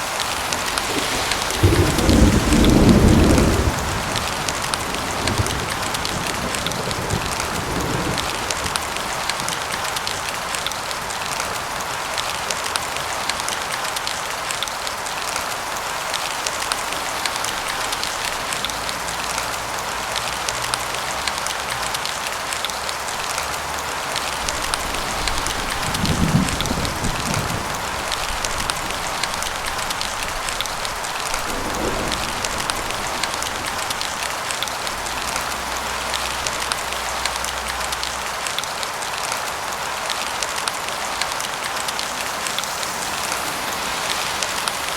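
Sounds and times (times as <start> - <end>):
distant thunder rumble: 0.0 - 9.9, 24.4 - 35.5
steady rainfall: 0.0 - 44.9.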